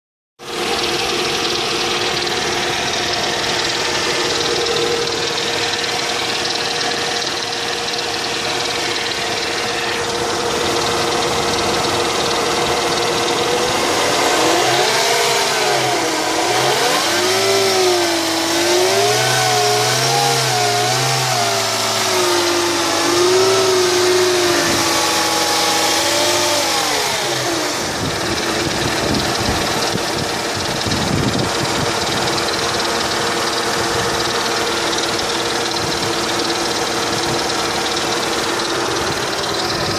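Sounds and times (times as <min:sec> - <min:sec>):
car engine knocking and howling: 0:00.4 - 0:39.9.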